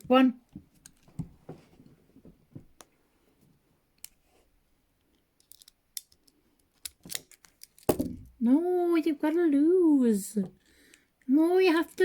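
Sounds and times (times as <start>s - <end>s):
handcuff metallic clicks: 5.4s - 7.9s.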